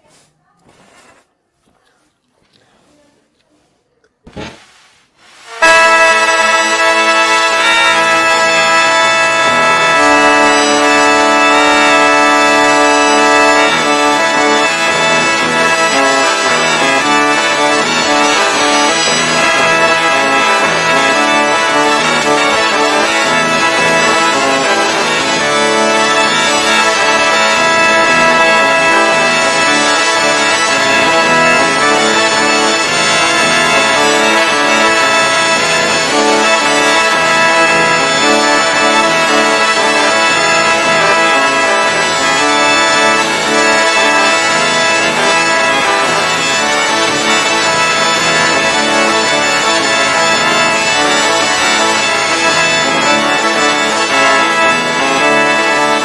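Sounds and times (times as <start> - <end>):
bagpipes playing: 5.5 - 56.0.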